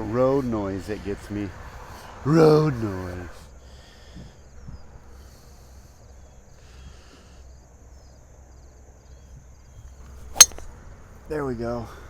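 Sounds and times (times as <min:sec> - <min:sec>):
golf club striking ball: 0:10.4 - 0:10.7.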